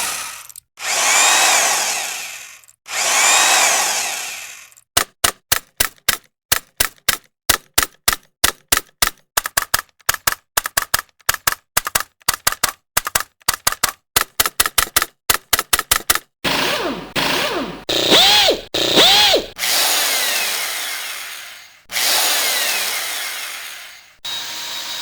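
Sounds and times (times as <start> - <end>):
sharp mechanical clicks: 4.4 - 16.3.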